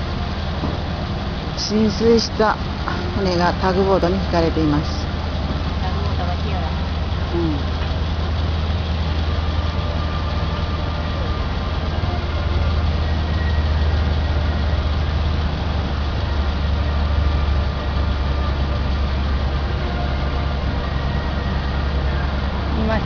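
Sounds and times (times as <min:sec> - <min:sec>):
boat engine droning: 0:00.0 - 0:23.0.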